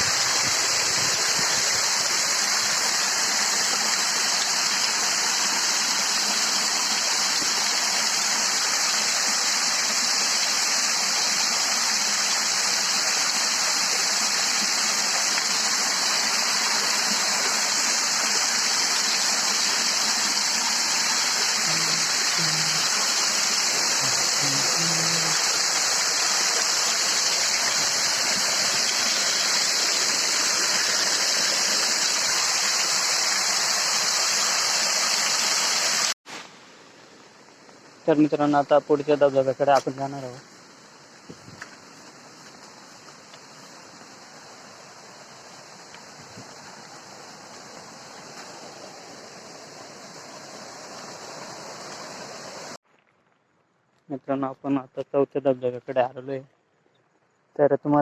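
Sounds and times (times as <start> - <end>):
waterfall rushing: 0.0 - 36.2, 43.2 - 52.8.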